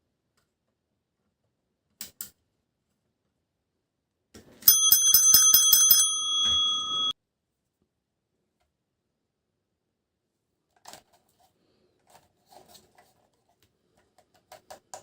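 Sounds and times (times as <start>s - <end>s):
small metal bell ringing: 4.7s - 7.1s.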